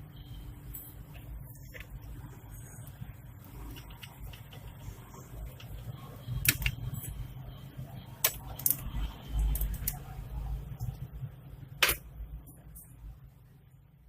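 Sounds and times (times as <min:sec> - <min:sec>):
low steady hum: 0:00.0 - 0:14.0
clicks of laptop parts handled: 0:11.8 - 0:12.0.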